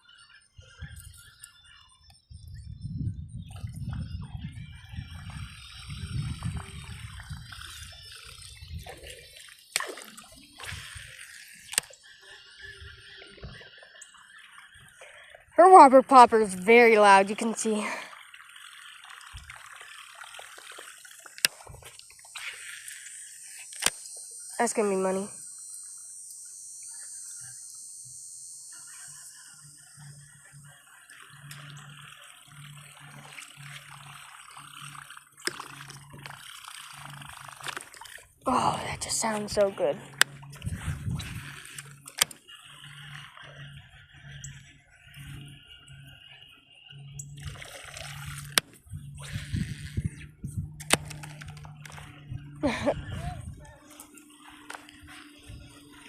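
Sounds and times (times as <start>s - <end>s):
lure splashing and gurgling: 3.4s - 56.0s
sharp clicks: 23.6s - 24.3s.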